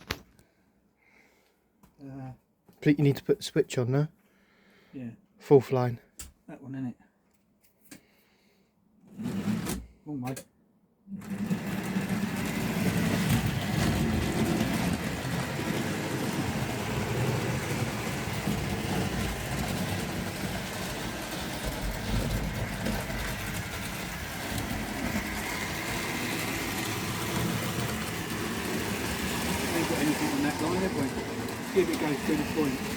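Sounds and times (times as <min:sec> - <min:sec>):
model train motor humming: 0:11.2 - 0:32.9
wheels rumbling on track: 0:12.0 - 0:32.9.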